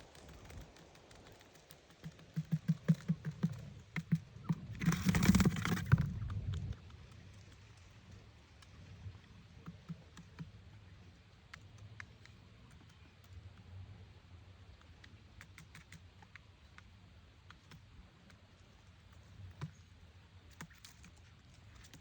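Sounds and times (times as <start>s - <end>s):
faint light clicks: 0.0s - 13.9s.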